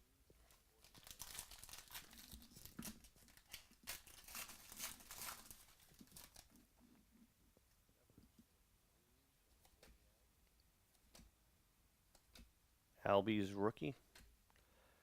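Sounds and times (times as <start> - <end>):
foil wrapper tearing and crinkling: 0.8 - 6.6.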